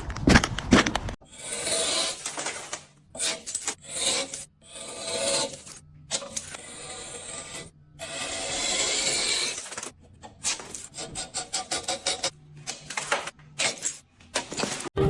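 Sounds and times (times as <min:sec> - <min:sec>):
ice being scraped: 0:01.3 - 0:09.9.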